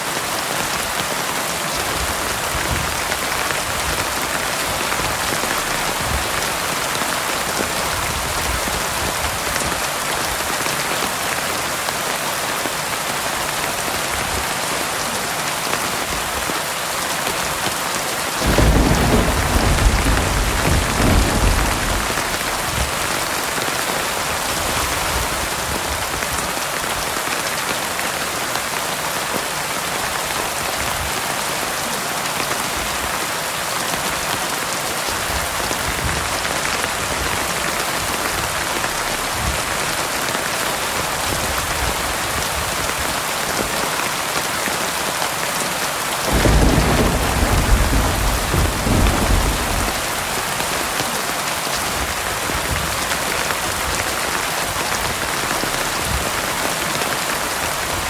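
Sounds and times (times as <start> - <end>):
heavy rain falling: 0.0 - 58.0
thunder clap and rumble: 2.0 - 6.7, 18.4 - 23.6, 46.2 - 51.0.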